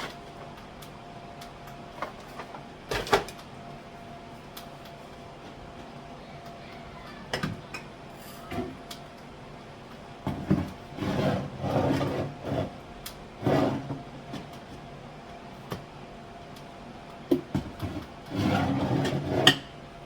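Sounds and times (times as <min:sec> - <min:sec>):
items rubbing and scraping: 0:10.3 - 0:12.8, 0:13.4 - 0:14.5, 0:17.6 - 0:19.6.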